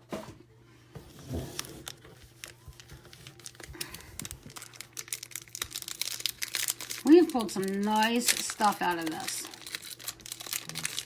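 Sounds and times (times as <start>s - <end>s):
foil wrappers crinkling and tearing: 1.5s - 11.0s.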